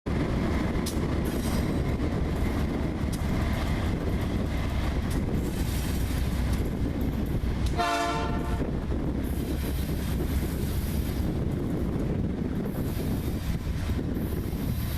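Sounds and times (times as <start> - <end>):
freight train rumbling: 0.0 - 14.9
train horn blast: 7.7 - 8.8.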